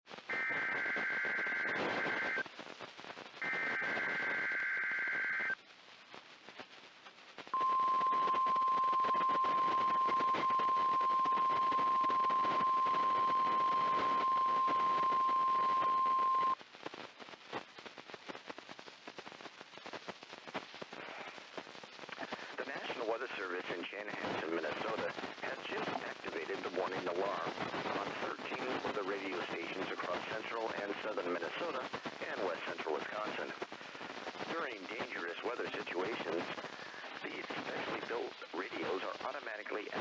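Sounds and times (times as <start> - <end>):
receiver hiss: 0.1 - 40.0
shrill digital header tones: 7.6 - 16.6
steady warning alarm tone: 7.6 - 16.6.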